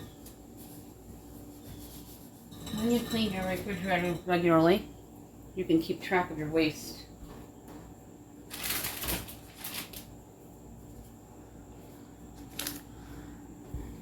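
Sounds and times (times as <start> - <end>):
items rustling: 7.3 - 10.2, 12.3 - 13.0.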